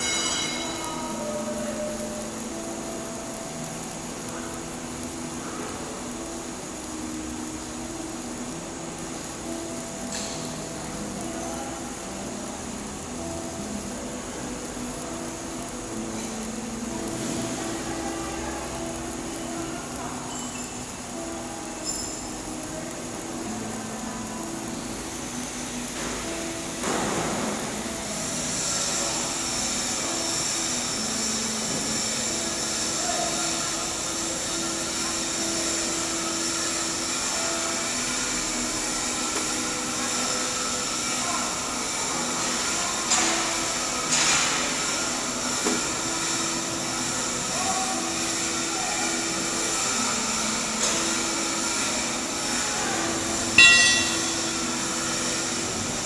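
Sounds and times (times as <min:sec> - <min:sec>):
machinery hum: 0:00.0 - 0:56.0
welding arc hissing: 0:00.0 - 0:56.0
ringing metal clang: 0:53.6 - 0:54.4.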